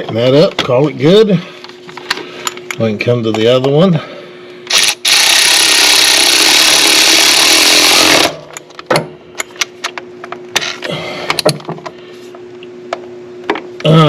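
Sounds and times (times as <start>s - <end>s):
faint steady hum: 0.0s - 14.0s
cordless ratchet running: 4.7s - 8.4s.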